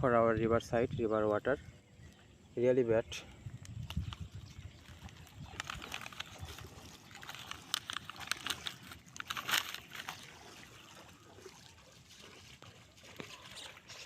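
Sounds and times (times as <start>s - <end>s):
plastic rubbish crinkling: 4.7s - 10.4s.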